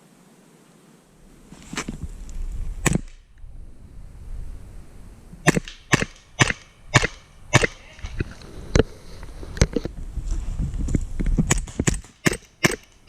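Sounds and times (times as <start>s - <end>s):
airsoft pistol shots: 5.4s - 7.8s, 11.5s - 12.9s.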